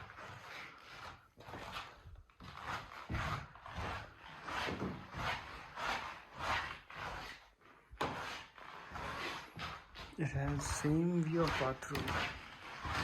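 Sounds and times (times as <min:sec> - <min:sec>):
footsteps on floor: 0:01.0 - 0:05.4, 0:08.0 - 0:13.0.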